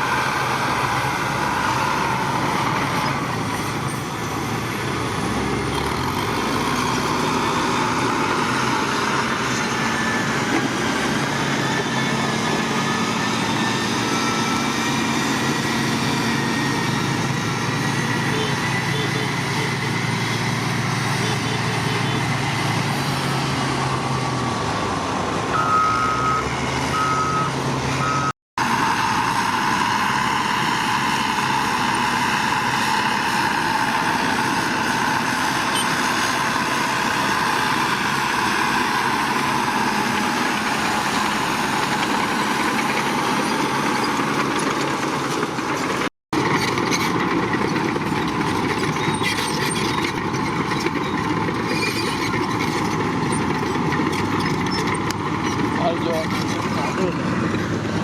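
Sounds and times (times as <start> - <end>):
construction machinery engines running: 0.0 - 58.0
reversing alarm beeping: 25.5 - 28.3.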